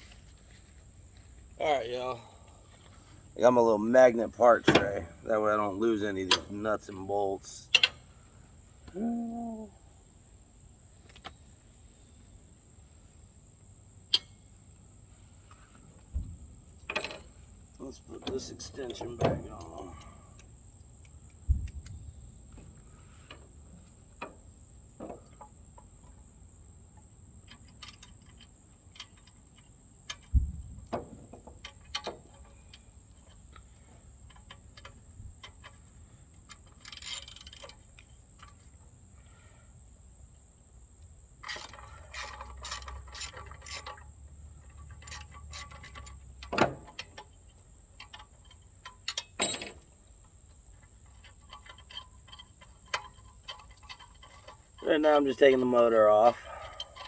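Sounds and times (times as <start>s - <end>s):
metal tools clinking: 48.0s - 50.2s.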